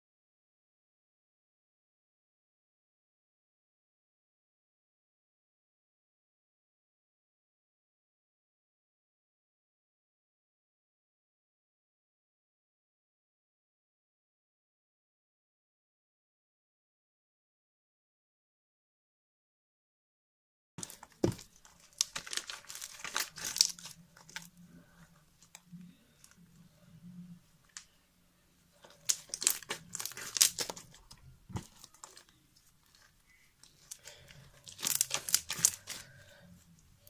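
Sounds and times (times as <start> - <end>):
sticky slime crackling: 20.8 - 25.6, 28.8 - 36.4.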